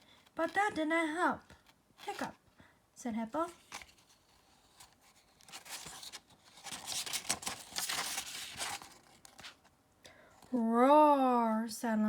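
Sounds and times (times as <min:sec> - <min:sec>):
paper page rustling: 0:01.5 - 0:02.4, 0:03.4 - 0:09.7.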